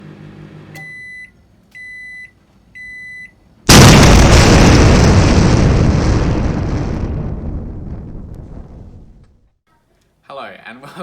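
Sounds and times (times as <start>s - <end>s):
loud explosion-like blast: 3.7s - 9.5s.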